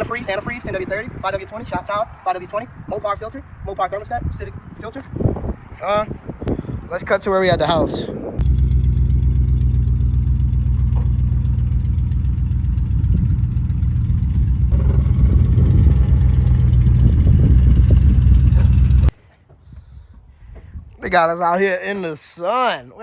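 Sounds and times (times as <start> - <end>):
car engine idling: 8.4 - 19.2.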